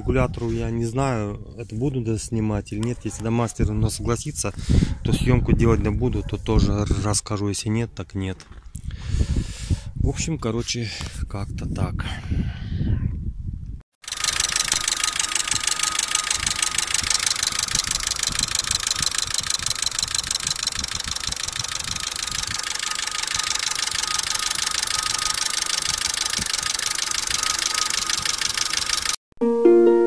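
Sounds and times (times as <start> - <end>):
fast rattle from engine: 14.0 - 29.2
car engine idling: 14.1 - 29.2.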